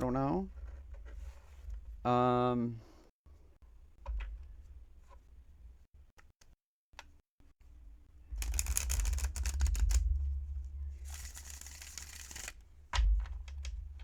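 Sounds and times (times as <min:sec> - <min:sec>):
cards flicking: 0:11.1 - 0:12.6
cards sliding rustle: 0:11.1 - 0:12.6.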